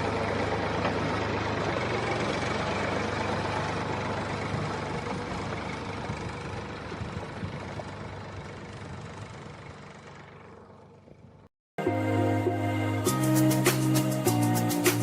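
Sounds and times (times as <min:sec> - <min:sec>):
tractor engine idling: 0:00.0 - 0:11.5.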